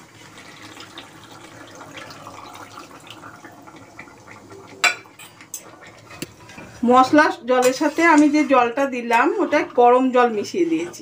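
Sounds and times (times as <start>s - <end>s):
water pouring into a pan: 0.0s - 6.9s.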